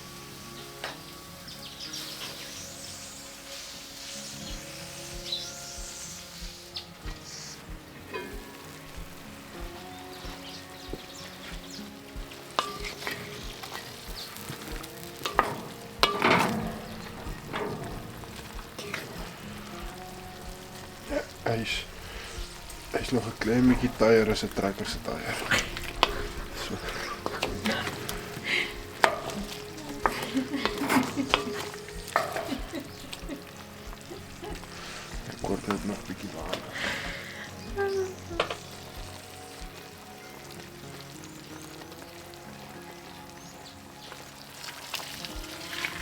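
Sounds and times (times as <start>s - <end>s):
food sizzling in a pot: 0.0s - 46.0s
utensil clinking against pot: 15.2s - 19.4s.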